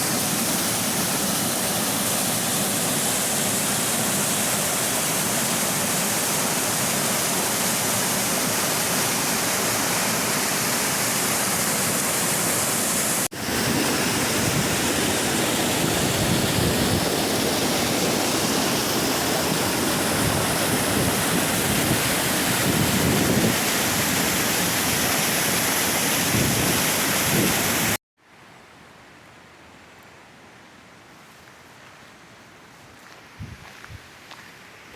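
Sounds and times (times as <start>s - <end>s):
waterfall rushing: 0.0s - 28.0s
quiet outdoor background: 28.2s - 34.9s.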